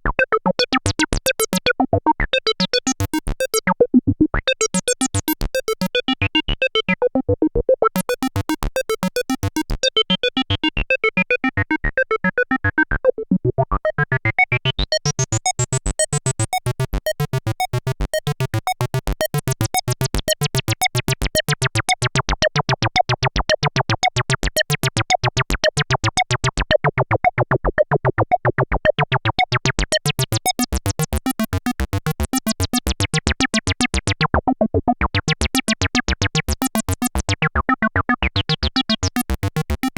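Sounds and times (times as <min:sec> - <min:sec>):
synthesizer acid bassline: 0:13.8 - 0:22.1, 0:29.3 - 0:34.3, 0:35.4 - 0:39.9.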